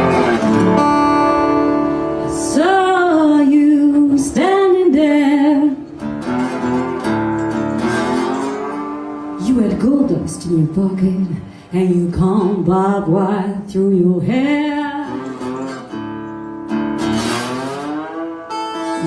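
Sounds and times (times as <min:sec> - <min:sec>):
acoustic guitar: 0:00.0 - 0:19.0
sliding wavering melody: 0:05.9 - 0:11.4.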